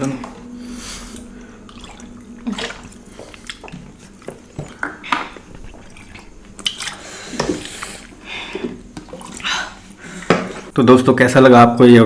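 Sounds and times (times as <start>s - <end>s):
wet chewing and smacking: 0.0s - 9.5s.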